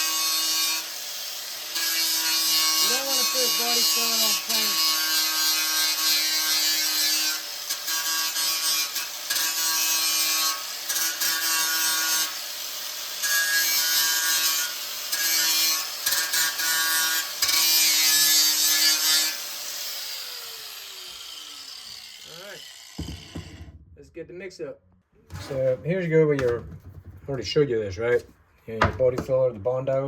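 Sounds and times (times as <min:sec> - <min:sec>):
electric grinder on metal: 0:00.0 - 0:23.8.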